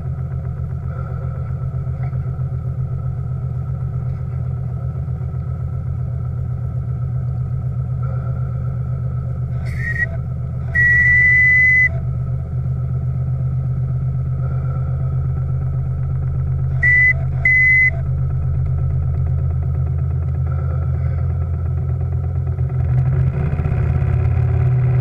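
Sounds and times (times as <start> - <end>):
low rumble with fast beat: 0.0 - 25.0
steam whistle blasts: 9.6 - 12.0, 16.8 - 18.0.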